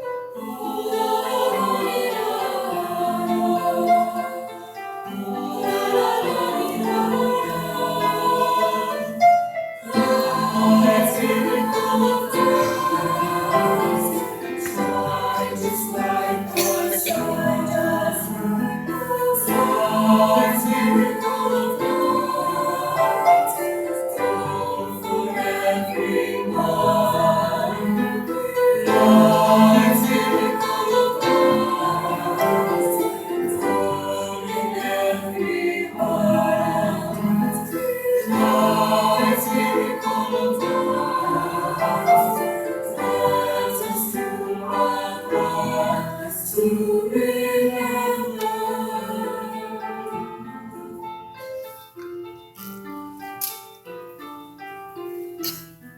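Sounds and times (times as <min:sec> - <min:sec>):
choir singing: 0:00.0 - 0:53.5.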